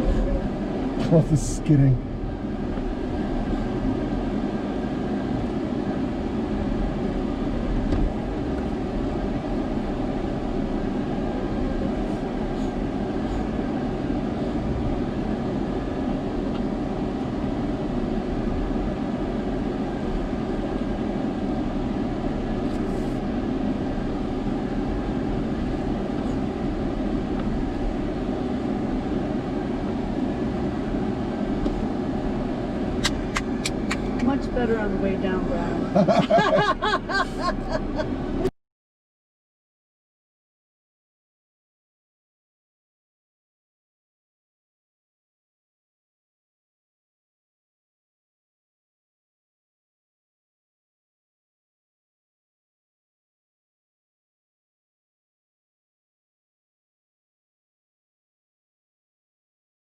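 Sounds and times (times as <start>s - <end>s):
off-road vehicle engine rumble: 0.0s - 38.5s.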